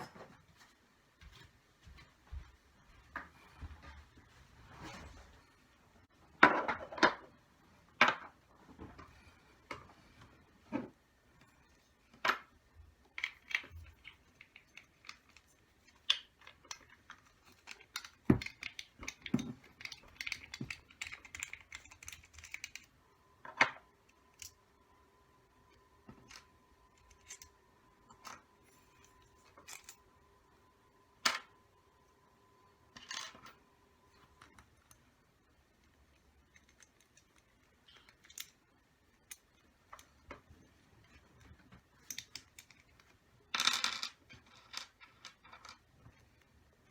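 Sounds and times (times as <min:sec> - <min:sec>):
faint steady tone hum: 0:00.0 - 0:46.9.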